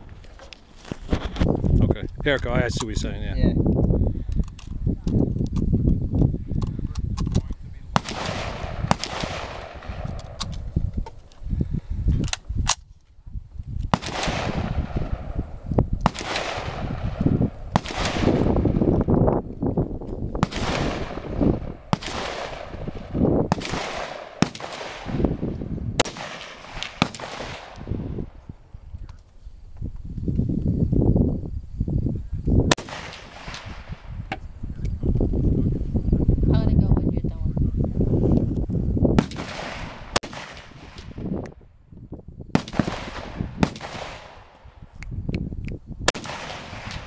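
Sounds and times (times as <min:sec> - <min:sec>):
gunshots with echo: 0:08.0 - 0:10.4, 0:14.0 - 0:15.4, 0:16.1 - 0:18.9, 0:20.4 - 0:25.4, 0:26.0 - 0:27.8, 0:32.7 - 0:33.9, 0:46.1 - 0:47.0.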